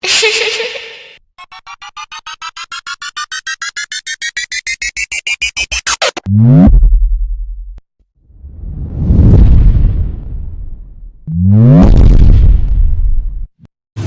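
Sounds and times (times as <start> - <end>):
rising synth beeps: 1.4 - 6.3
deep bass boom: 6.6 - 13.5.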